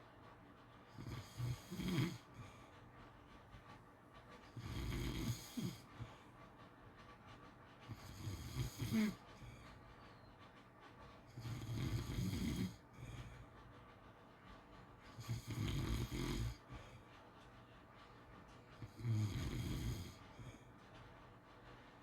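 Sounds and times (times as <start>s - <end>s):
dog snoring: 0.9s - 2.6s, 4.6s - 6.2s, 7.9s - 9.5s, 11.4s - 13.4s, 15.2s - 17.0s, 18.8s - 20.6s.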